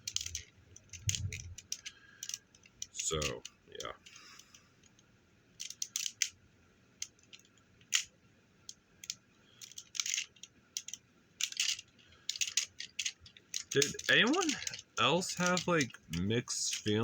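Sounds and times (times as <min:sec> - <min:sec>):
plastic toy parts clicking: 0:00.0 - 0:05.0, 0:05.6 - 0:06.4, 0:07.0 - 0:17.0.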